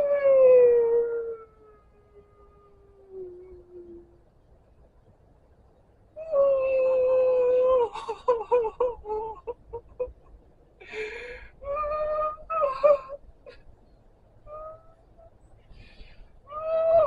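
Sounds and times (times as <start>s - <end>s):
man crying and sobbing: 7.3s - 13.6s.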